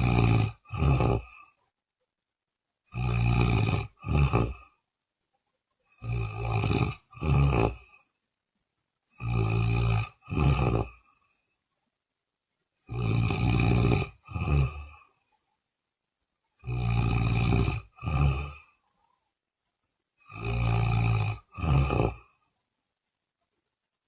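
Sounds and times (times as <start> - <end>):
loud snoring: 0.0 - 1.6, 2.9 - 4.8, 5.9 - 8.1, 9.1 - 11.2, 12.8 - 15.2, 16.6 - 18.8, 20.2 - 22.4.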